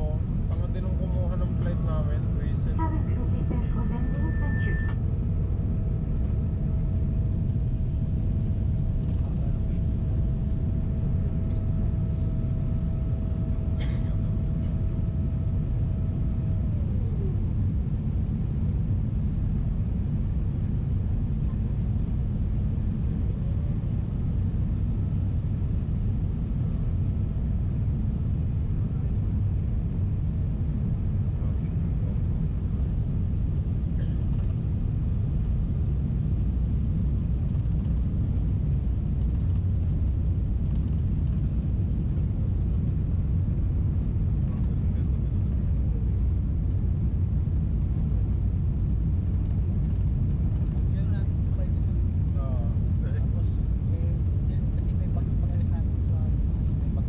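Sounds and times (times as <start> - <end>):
airplane cabin rumble: 0.0 - 57.0.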